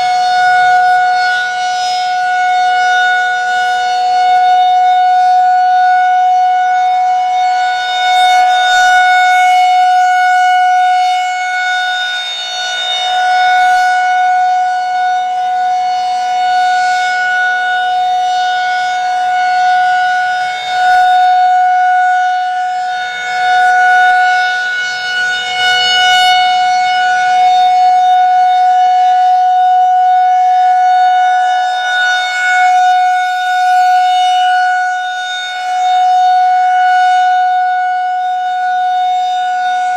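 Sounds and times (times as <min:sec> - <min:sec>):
siren steady tone: 0:00.0 - 0:39.9.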